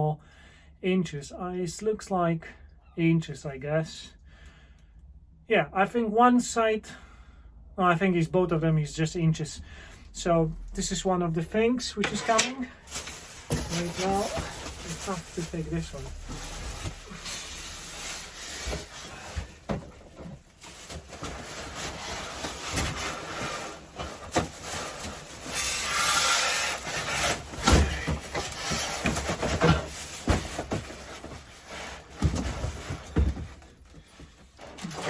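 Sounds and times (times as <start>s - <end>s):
packaging rubbing and scraping: 12.0s - 19.8s, 20.4s - 33.2s.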